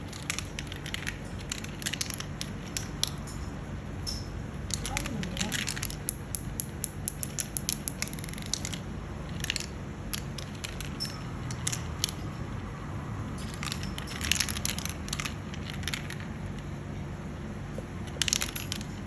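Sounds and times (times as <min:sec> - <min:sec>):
marbles clattering on marble run: 0:00.0 - 0:03.3, 0:04.7 - 0:12.3, 0:13.4 - 0:16.3, 0:18.0 - 0:19.0.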